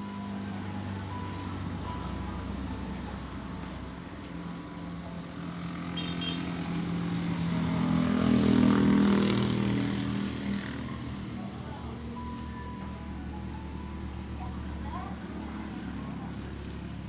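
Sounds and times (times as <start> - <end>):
motorcycle engine passing by: 4.4 - 12.4, 13.6 - 17.0.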